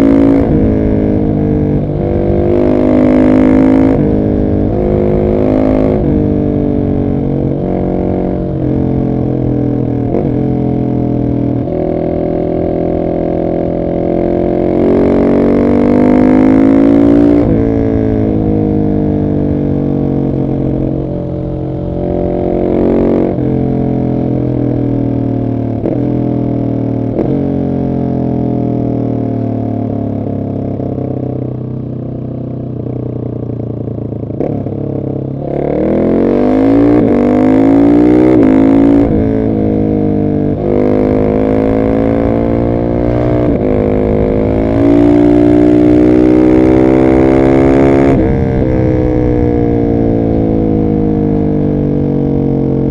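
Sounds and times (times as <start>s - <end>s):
motorcycle engine accelerating: 0.0s - 52.9s.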